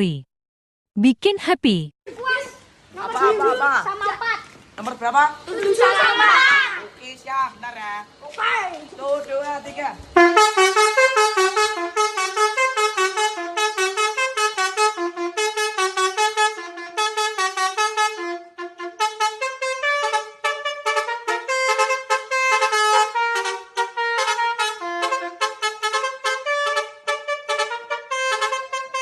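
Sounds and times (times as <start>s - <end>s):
multi-tone bus horn melody: 10.2s - 29.0s.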